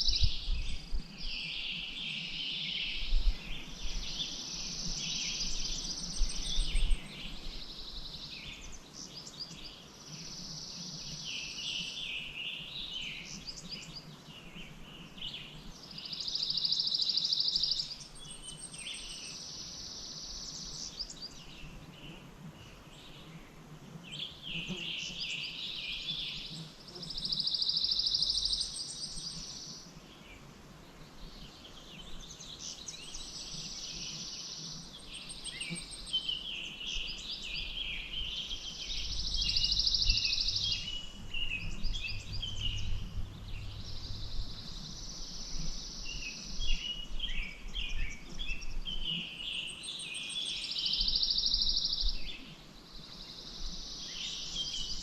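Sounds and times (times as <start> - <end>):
birds chirping: 24.1 - 30.4, 31.0 - 55.0.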